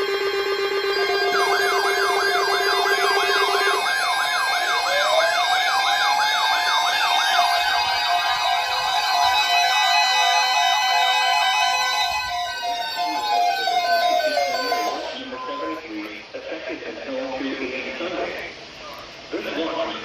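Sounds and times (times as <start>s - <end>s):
siren winding upward: 0.0s - 15.8s
siren yelp: 0.0s - 15.8s
steady electronic tones: 0.0s - 16.0s.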